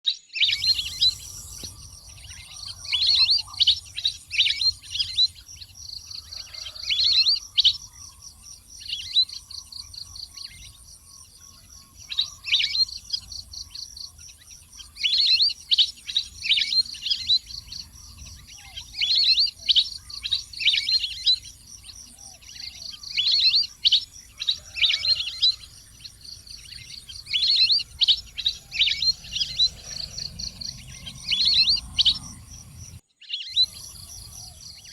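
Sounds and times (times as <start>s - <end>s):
ducks whistling calls: 0.5s - 5.3s.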